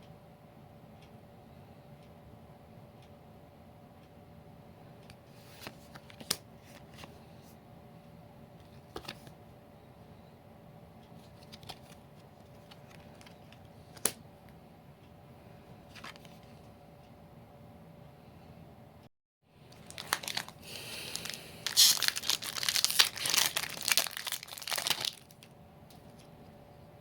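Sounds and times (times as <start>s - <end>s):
faint steady hum: 0.0s - 27.0s
cards snapping and clicking: 11.4s - 14.2s.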